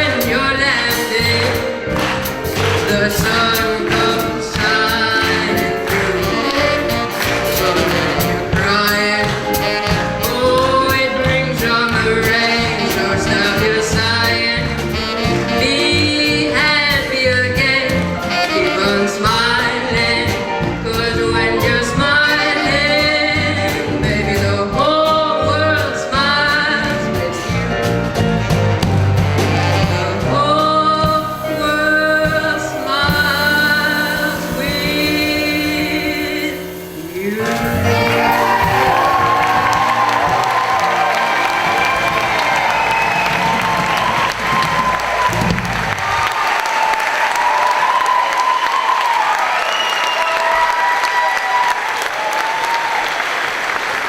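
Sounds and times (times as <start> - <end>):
person singing: 0.0 - 28.2, 29.6 - 42.5
instrumental accompaniment: 0.0 - 46.3.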